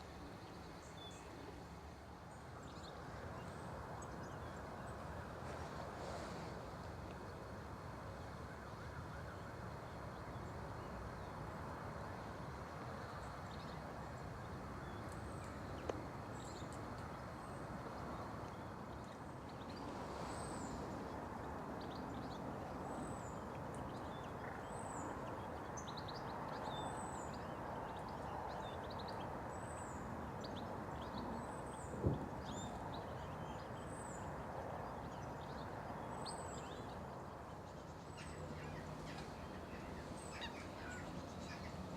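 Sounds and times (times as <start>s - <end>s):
small birds calling: 36.4s - 41.9s.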